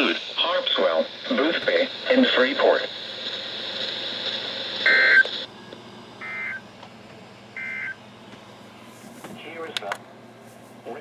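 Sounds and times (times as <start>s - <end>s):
radio hiss with high whine: 0.0s - 6.6s, 9.1s - 10.0s, 10.6s - 11.0s.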